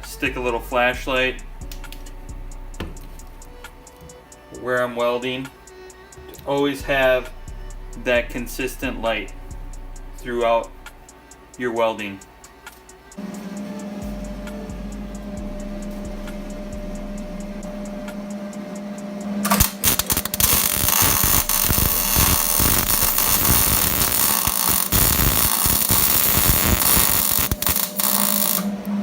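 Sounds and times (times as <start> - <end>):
steady electrical hum: 0.0 - 29.0
welding arc crackling: 12.6 - 28.8.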